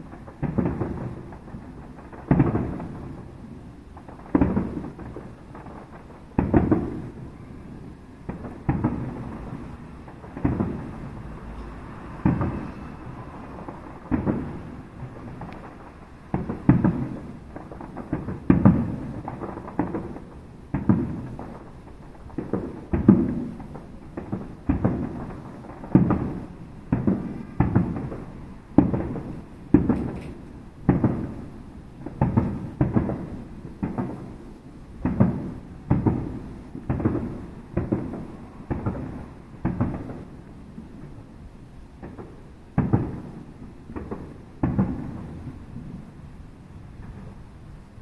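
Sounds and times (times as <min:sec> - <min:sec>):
firework shells bursting: 0:08.2 - 0:31.4.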